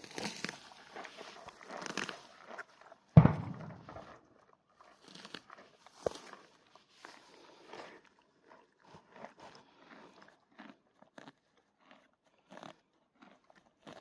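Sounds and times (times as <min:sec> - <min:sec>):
loud deep thump: 0:03.2 - 0:04.1
footsteps: 0:03.2 - 0:04.2.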